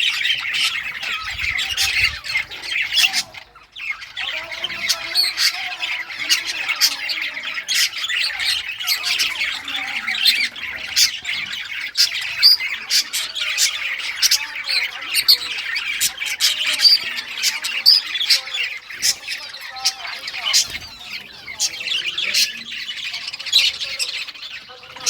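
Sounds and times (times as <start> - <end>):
budgerigars chattering and chirping: 0.0 - 25.0.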